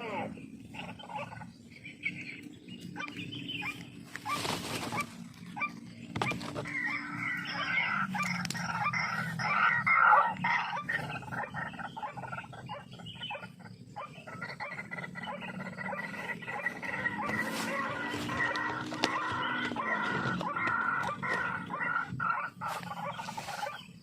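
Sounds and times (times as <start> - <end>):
loud repeated bird calls: 0.0 - 24.0
low steady hum: 0.0 - 24.0
rustle: 4.0 - 5.6, 16.6 - 21.4.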